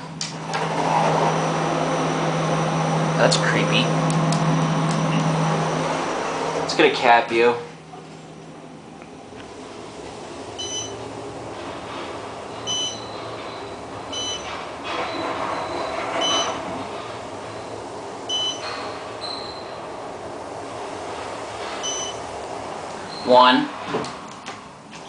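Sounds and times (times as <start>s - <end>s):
elevator running hum: 0.0s - 25.0s
high electronic beeps: 10.6s - 11.0s, 21.8s - 22.2s.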